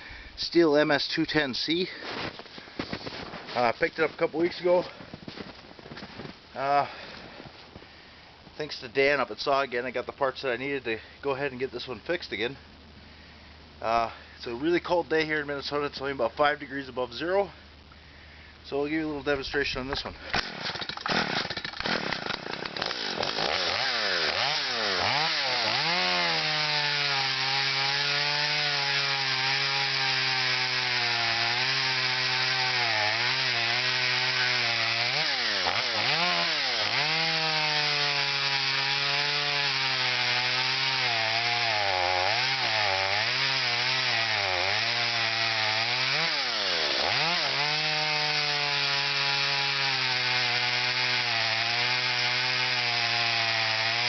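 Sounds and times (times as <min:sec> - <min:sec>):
chainsaw running at high revs: 0:20.4 - 0:54.0.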